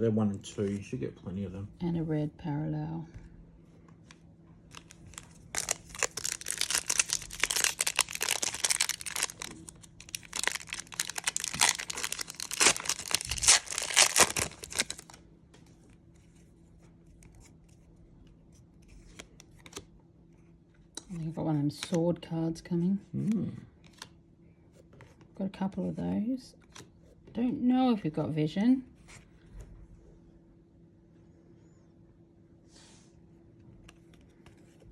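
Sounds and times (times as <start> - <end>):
card pack wrapper tearing and crinkling: 4.7 - 15.2.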